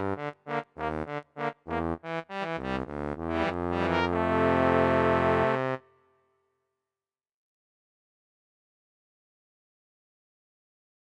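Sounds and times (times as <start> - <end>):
synthesizer keyboard music: 0.0 - 5.8.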